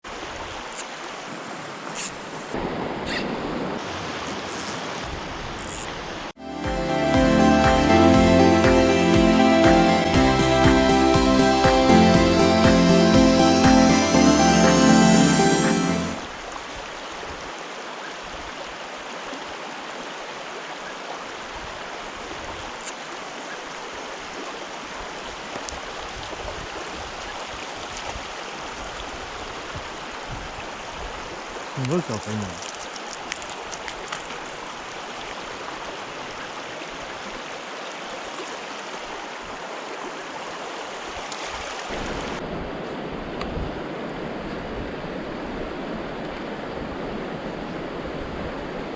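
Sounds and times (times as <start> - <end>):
stream water rushing: 0.0 - 48.9
music: 6.4 - 16.2.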